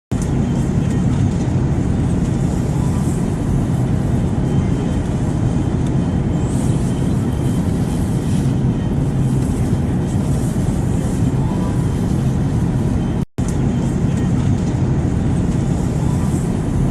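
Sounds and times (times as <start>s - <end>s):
airplane rumble: 0.1s - 16.9s
faint hum: 0.1s - 16.9s.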